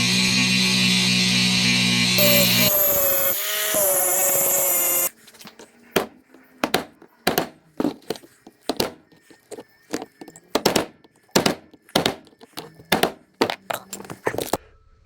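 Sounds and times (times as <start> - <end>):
grinder grinding steel: 0.0 - 5.1.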